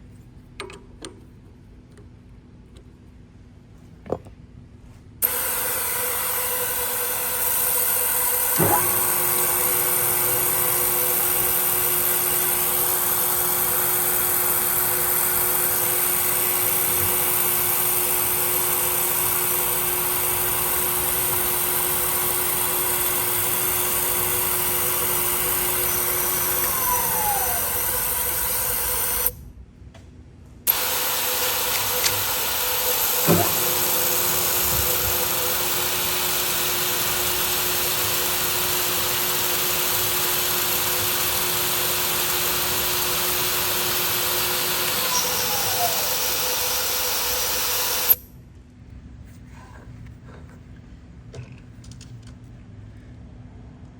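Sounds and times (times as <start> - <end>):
milling machine drilling: 5.2 - 29.4, 30.7 - 48.2.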